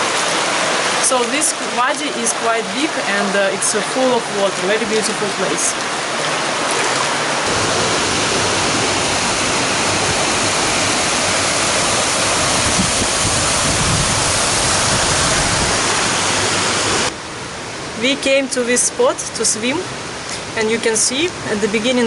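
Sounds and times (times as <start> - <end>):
water rushing over rocks: 0.0 - 17.1.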